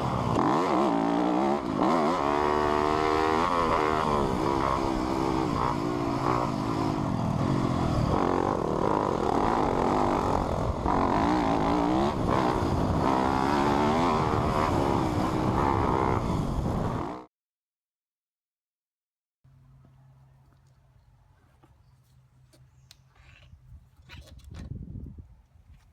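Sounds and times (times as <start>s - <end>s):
off-road engine throttle blips: 0.0s - 17.3s.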